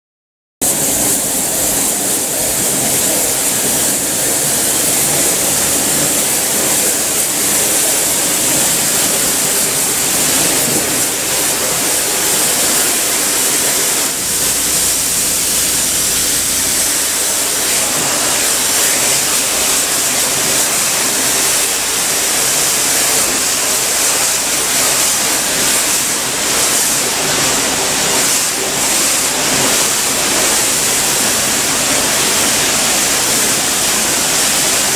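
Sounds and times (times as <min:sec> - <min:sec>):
cleaning equipment hissing: 0:00.6 - 0:34.9.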